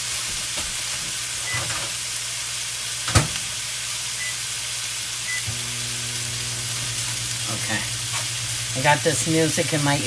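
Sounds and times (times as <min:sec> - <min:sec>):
food sizzling: 0:00.0 - 0:10.0.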